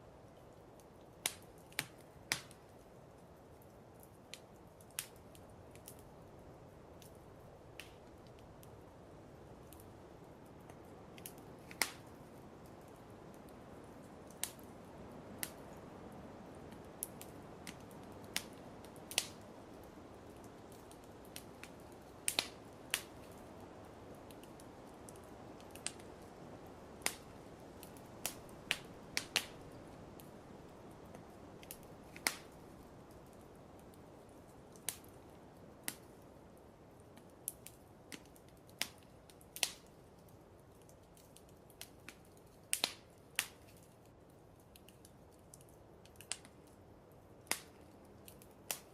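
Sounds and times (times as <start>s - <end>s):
soft steady hiss: 0.0s - 48.9s
wood fire crackling: 0.0s - 48.9s
sharp pops of fire: 1.2s - 2.8s, 4.0s - 6.0s, 7.0s - 8.8s, 10.7s - 13.0s, 14.2s - 14.7s, 15.4s - 15.8s, 16.7s - 23.4s, 24.3s - 26.3s, 27.0s - 30.3s, 31.1s - 33.4s, 34.7s - 35.2s, 35.8s - 36.1s, 37.2s - 40.3s, 40.9s - 43.9s, 44.8s - 46.8s, 47.4s - 48.9s.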